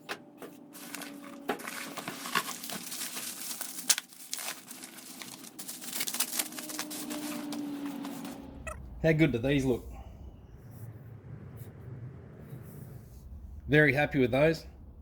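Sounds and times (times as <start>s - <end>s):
packing material crinkling and tearing: 0.7s - 8.4s.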